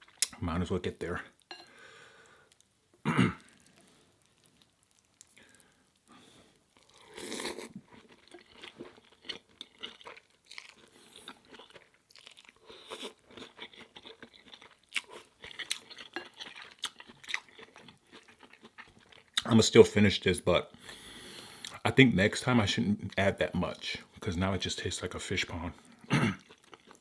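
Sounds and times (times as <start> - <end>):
person chewing noodles: 0.0 - 0.4, 3.4 - 19.4, 25.8 - 27.0.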